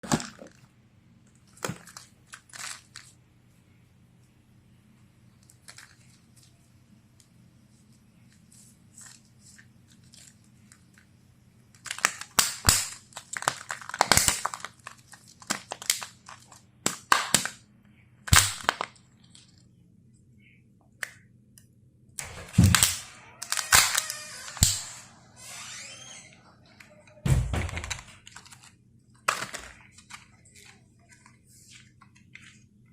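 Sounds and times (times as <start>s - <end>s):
wrappers crinkling and tearing: 1.4s - 3.2s, 5.4s - 6.6s, 11.8s - 16.7s, 22.6s - 25.0s, 28.1s - 32.6s.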